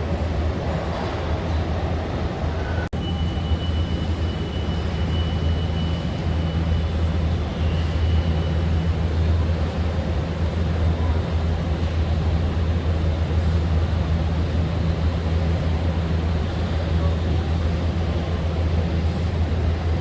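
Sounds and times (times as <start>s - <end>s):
factory machinery hum: 0.0s - 20.0s.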